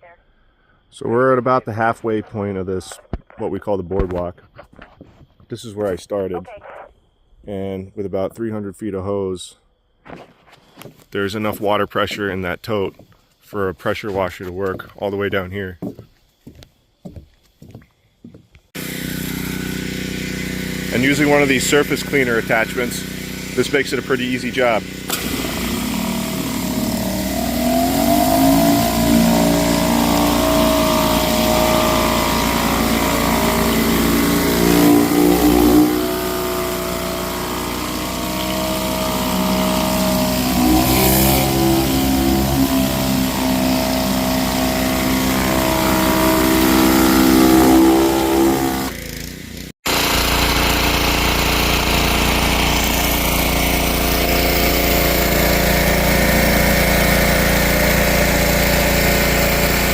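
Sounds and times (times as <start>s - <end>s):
pressure washer engine drone: 18.7s - 59.9s
hissing water spray: 18.8s - 49.2s, 49.9s - 59.9s.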